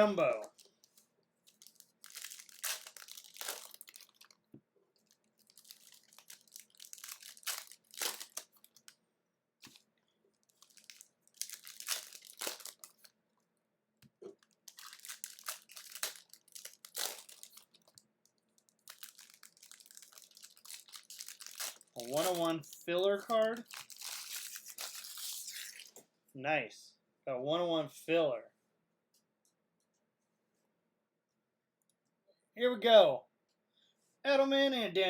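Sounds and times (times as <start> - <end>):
card pack wrappers crinkling: 0.0 - 4.4, 5.0 - 9.0, 9.6 - 13.1, 14.3 - 25.9.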